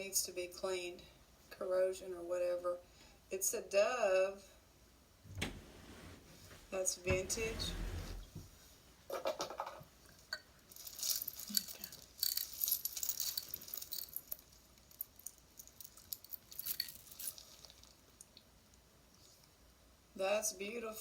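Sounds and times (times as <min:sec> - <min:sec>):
metal jewelry clinking: 0:10.7 - 0:18.0.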